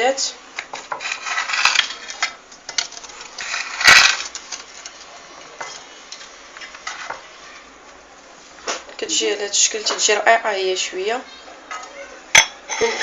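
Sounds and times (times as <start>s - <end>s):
utensil scraping baking dish: 0.8s - 5.9s.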